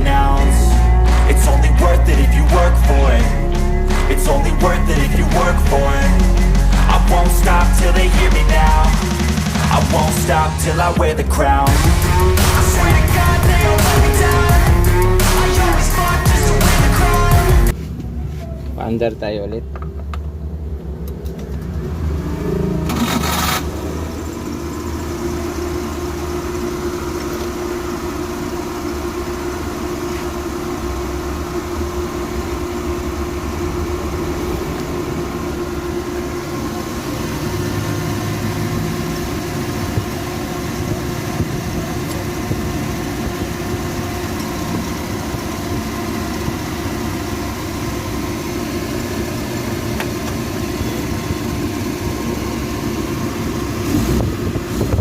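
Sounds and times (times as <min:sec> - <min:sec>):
van engine idling: 0:00.0 - 0:55.0
engine cranking and catching: 0:19.6 - 0:55.0.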